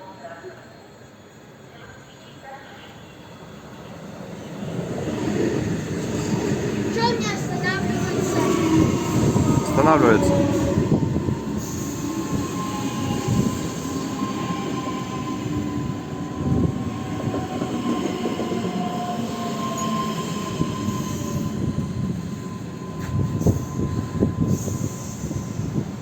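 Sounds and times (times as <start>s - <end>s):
train wheels squealing: 3.0s - 26.0s
rumble of train running gear: 20.7s - 26.0s.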